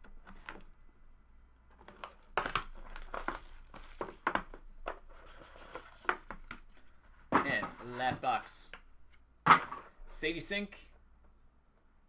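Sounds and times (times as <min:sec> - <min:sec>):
plastic packaging crinkling: 0:01.7 - 0:04.7.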